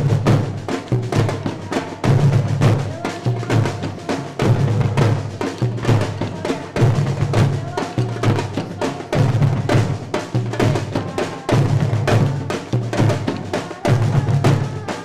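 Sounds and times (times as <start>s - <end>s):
rapid sharp drum strikes: 0.0s - 15.0s.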